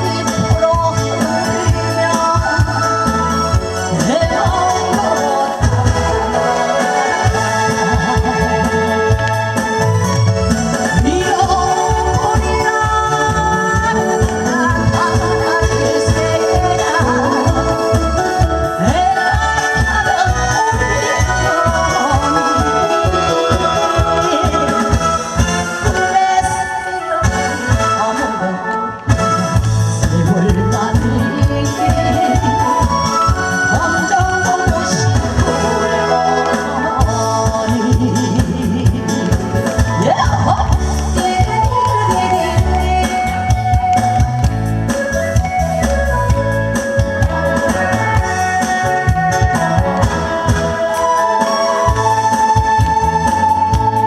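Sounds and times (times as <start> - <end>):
pop song with steady beat: 0.0 - 54.0
steady drum beat: 29.1 - 51.0.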